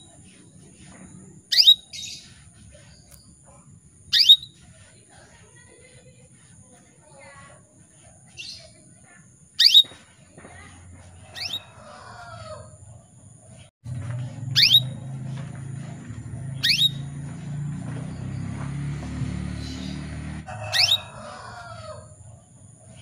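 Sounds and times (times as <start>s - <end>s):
faint chirps: 0.0s - 10.2s
canary call notes: 1.5s - 2.9s, 4.1s - 4.8s, 9.6s - 10.0s, 11.2s - 12.0s, 14.4s - 15.1s, 16.4s - 17.4s, 19.6s - 21.2s.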